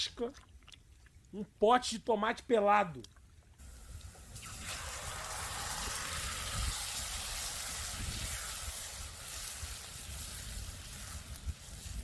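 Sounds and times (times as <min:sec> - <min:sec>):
sauce sizzling in hot pan: 0:03.6 - 0:12.0.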